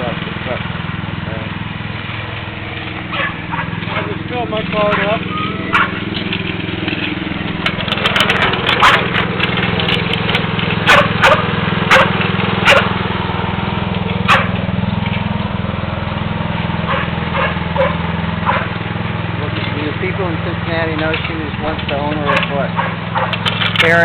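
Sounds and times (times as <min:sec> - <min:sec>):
riding lawn mower engine running: 0:00.0 - 0:24.0
short sharp clicks and cracks: 0:06.2 - 0:11.0, 0:23.2 - 0:24.0.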